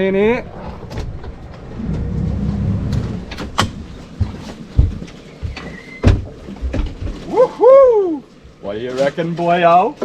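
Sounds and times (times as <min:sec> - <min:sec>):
knocks and thumps against boat: 0:00.9 - 0:07.3.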